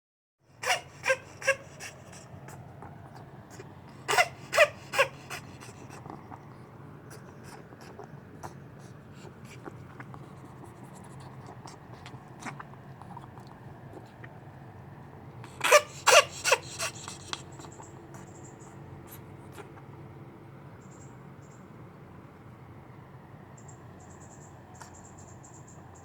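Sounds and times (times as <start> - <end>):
ferret coughing: 0.5 - 14.5, 15.4 - 19.9
heavy breathing: 0.6 - 14.6, 15.4 - 19.9.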